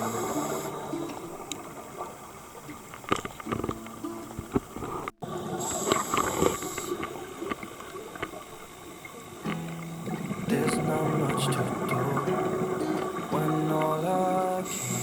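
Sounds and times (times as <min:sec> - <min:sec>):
background pop music: 0:10.5 - 0:15.0.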